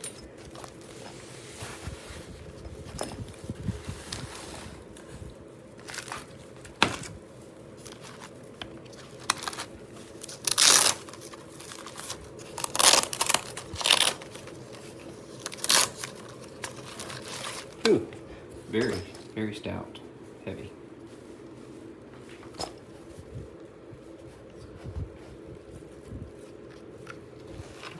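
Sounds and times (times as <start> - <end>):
packaging crinkling and tearing: 5.7 - 17.9.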